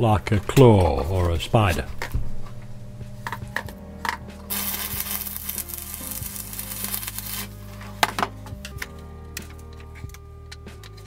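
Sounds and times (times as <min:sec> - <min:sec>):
welding arc crackling: 0:04.5 - 0:07.6.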